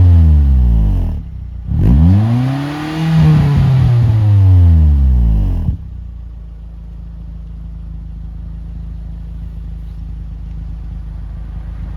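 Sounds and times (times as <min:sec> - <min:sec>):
car engine idling: 0:00.0 - 0:11.9.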